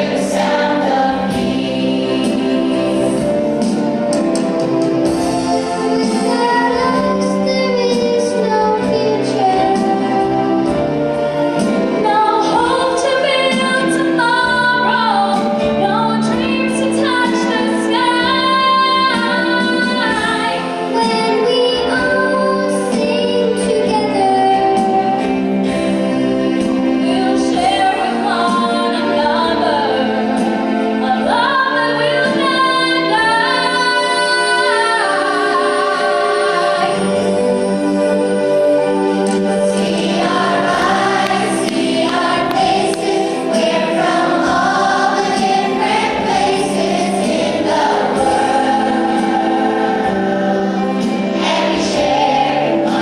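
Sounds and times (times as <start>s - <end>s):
women singing: 0.0s - 3.4s, 12.0s - 25.4s, 27.0s - 37.3s, 39.6s - 53.0s
instrumental backing: 0.0s - 53.0s.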